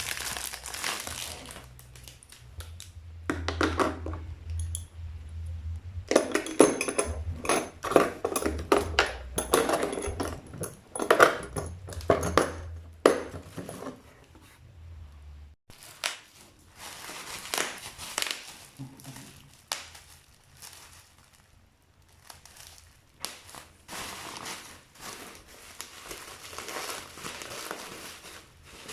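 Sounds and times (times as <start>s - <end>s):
packaging crinkling: 0.0s - 2.9s, 15.7s - 28.9s.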